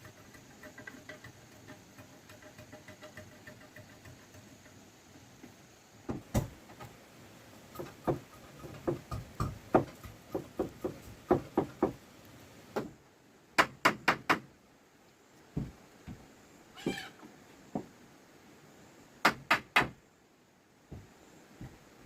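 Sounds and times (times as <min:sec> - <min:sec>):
irregular knocks and taps: 0:05.4 - 0:07.0, 0:07.7 - 0:12.0, 0:15.5 - 0:16.3, 0:20.9 - 0:21.8.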